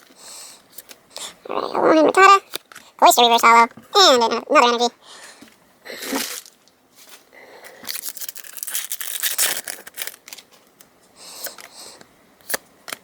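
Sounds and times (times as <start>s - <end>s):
foil wrapper tearing and crinkling: 7.7s - 10.5s.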